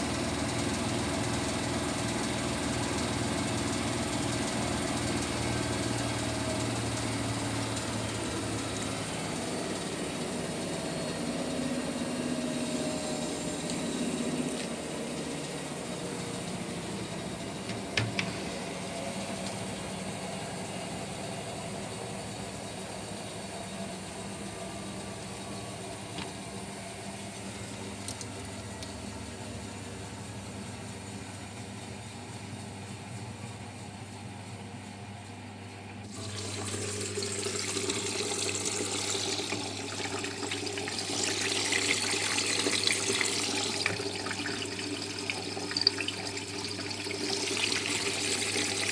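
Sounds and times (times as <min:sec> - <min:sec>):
motor hum: 0:00.0 - 0:33.1.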